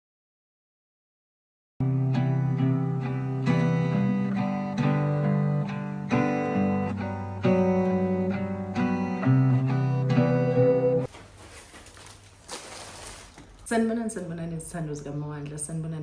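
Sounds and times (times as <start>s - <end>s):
guitar chords strummed: 1.8s - 11.1s.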